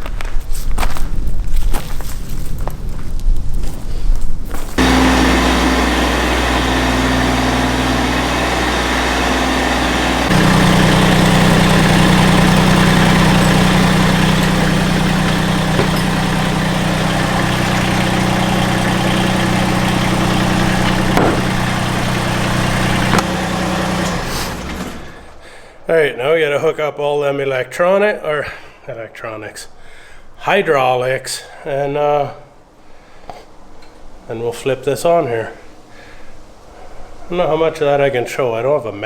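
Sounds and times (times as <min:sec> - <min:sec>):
loader engine running: 0:04.8 - 0:25.4.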